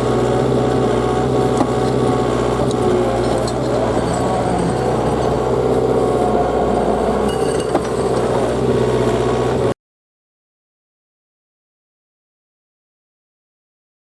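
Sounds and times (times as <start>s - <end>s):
diesel engine running: 0.0s - 9.8s.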